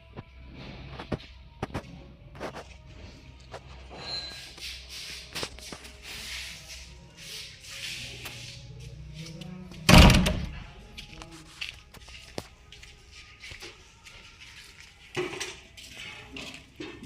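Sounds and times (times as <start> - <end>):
loud ringing thump: 9.9 - 10.6.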